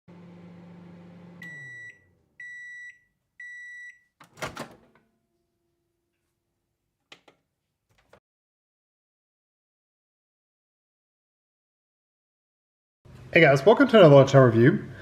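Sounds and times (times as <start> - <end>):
microwave oven hum: 0.1 - 5.6
high microwave beeps: 1.4 - 4.2.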